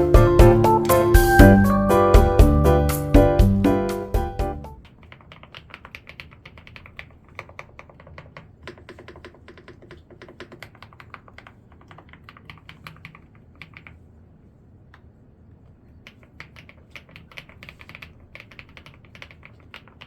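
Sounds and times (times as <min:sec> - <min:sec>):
mechanical keyboard typing: 0:04.8 - 0:14.0, 0:16.0 - 0:20.0.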